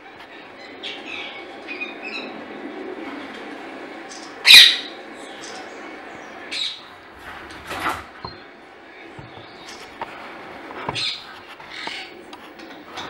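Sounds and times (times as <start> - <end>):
parakeet shrill squawk: 4.4 - 4.9.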